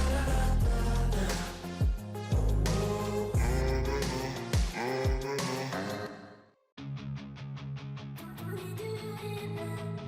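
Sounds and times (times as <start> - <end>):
background pop music: 0.0 - 6.1.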